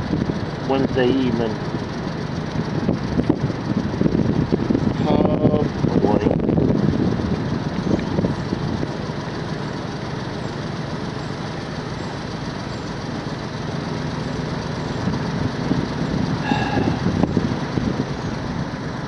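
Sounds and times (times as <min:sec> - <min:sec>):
engine low rumble: 0:00.0 - 0:19.0.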